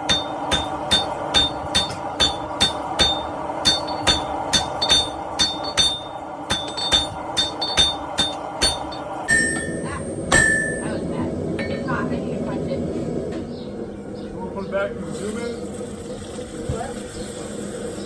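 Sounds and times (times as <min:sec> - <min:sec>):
hammer ringing on anvil: 0:00.0 - 0:11.8.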